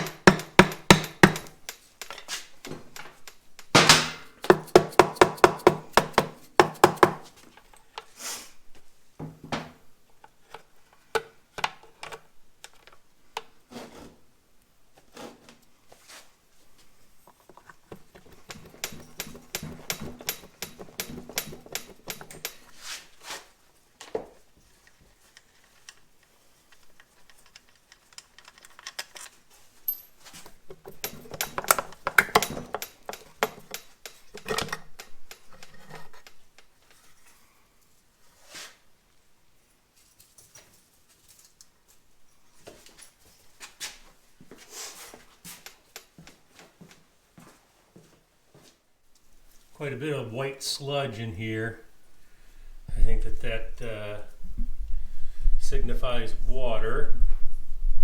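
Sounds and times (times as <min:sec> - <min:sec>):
metal parts clinking: 0:00.0 - 0:05.0, 0:17.5 - 0:23.0, 0:26.7 - 0:36.6
hand tools clicking on metal: 0:00.0 - 0:07.3, 0:17.3 - 0:23.0, 0:25.3 - 0:36.7.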